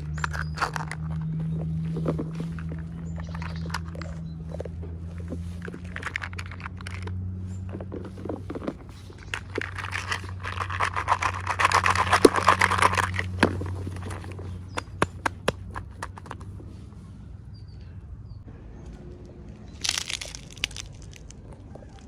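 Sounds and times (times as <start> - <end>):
plastic packaging crinkling: 9.1 - 14.3, 19.8 - 22.0.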